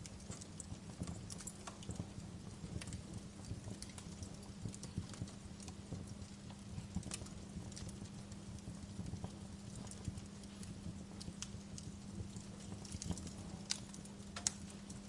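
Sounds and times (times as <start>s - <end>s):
low steady rumble: 0.0s - 15.0s
wood fire crackling: 0.0s - 15.0s.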